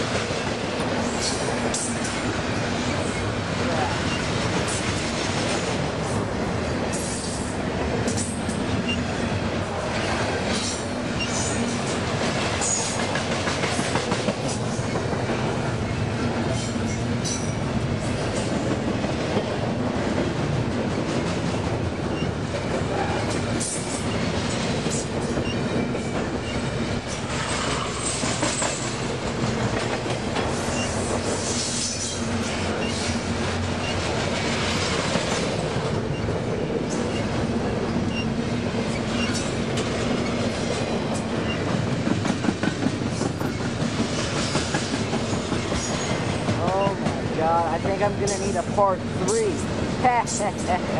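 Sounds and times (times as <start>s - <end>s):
freight train wheels rumbling: 0.0s - 50.9s
high wheel squeals: 38.1s - 39.5s.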